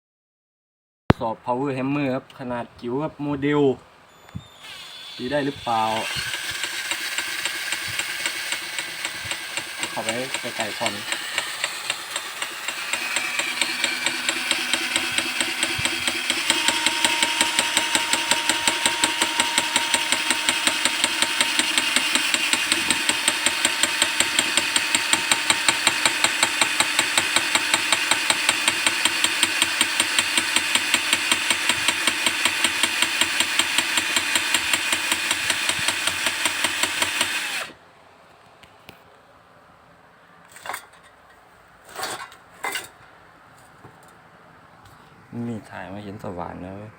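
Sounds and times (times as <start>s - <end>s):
rapid hammer blows: 4.6s - 37.7s
motor whining: 4.6s - 37.8s.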